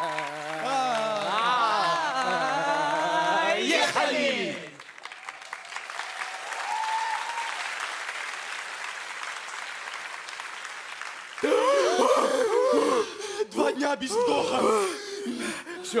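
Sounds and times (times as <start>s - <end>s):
audience applauding: 0.0s - 13.0s
loud voice: 0.6s - 4.7s.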